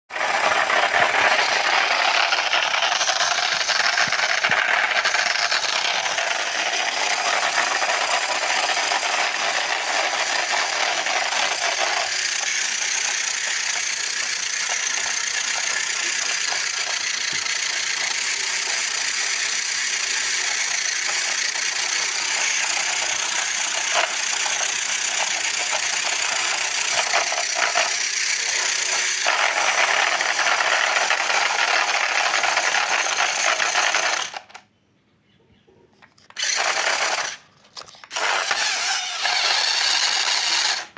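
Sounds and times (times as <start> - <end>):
toy car motors whirring: 0.1 - 34.7, 36.0 - 40.9.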